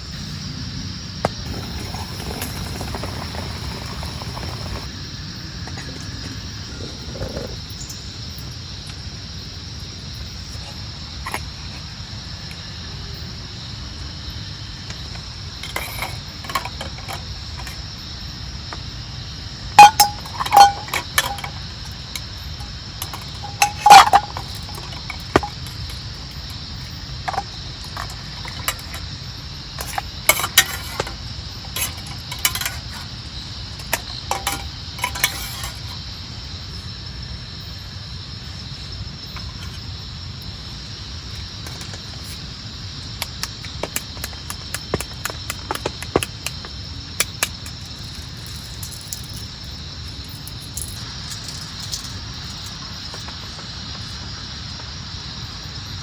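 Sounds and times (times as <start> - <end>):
steady background hiss: 0.0 - 56.0
metallic clinks and knocks: 19.8 - 22.3, 23.0 - 26.6, 33.8 - 35.9, 47.3 - 52.8.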